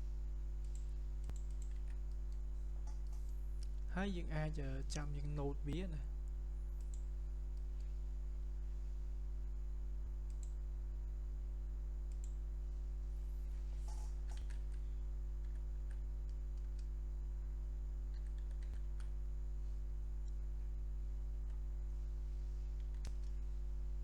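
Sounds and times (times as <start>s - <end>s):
low electrical hum: 0.0s - 24.0s
computer mouse clicks: 0.6s - 3.7s, 6.8s - 7.9s, 10.3s - 10.6s, 12.1s - 12.4s, 13.8s - 14.8s, 18.1s - 19.1s, 22.8s - 23.4s.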